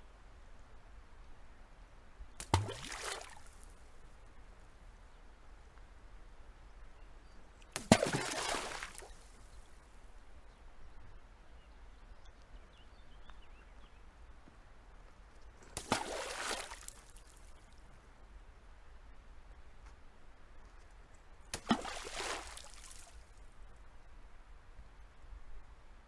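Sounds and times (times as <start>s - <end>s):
faint water ambience: 0.0s - 26.0s
water splashing: 2.4s - 3.6s, 7.8s - 9.3s, 15.6s - 17.6s, 21.5s - 23.4s
stones plopping into pond: 2.4s - 3.8s, 7.6s - 9.6s, 15.6s - 17.6s, 21.5s - 23.4s.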